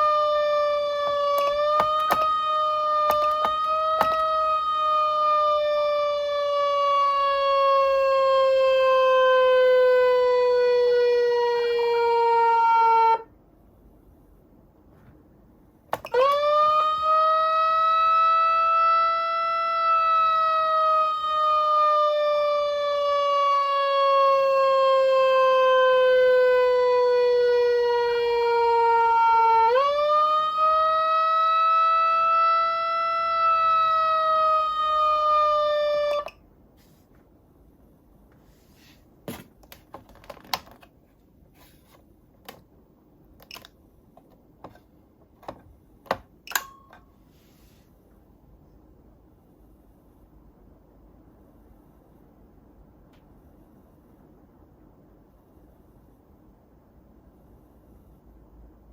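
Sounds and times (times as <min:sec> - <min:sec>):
electronic siren tone: 0:00.0 - 0:13.2.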